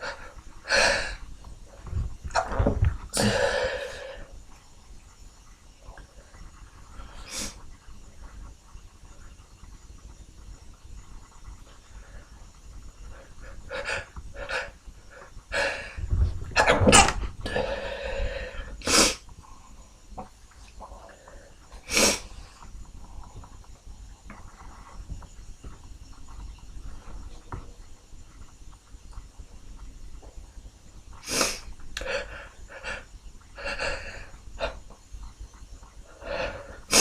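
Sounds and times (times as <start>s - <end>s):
nasal breathing: 0.0s - 1.3s, 3.1s - 4.4s, 11.7s - 16.3s, 17.4s - 19.9s, 31.2s - 35.0s, 36.0s - 37.0s.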